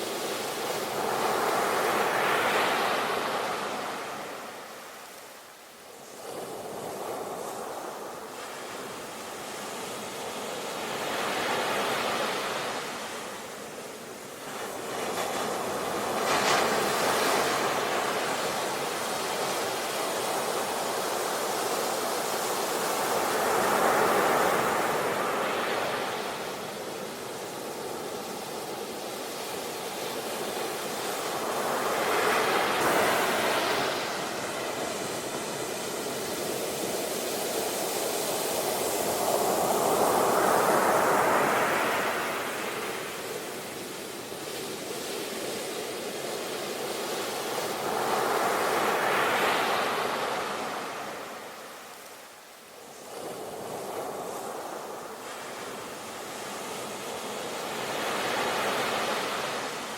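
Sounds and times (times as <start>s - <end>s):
sea waves washing onto shore: 0.0s - 59.9s.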